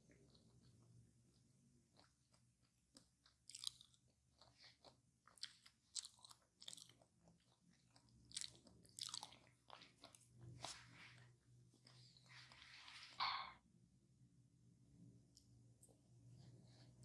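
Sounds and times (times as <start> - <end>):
person chewing crispy food: 0.1 - 13.4.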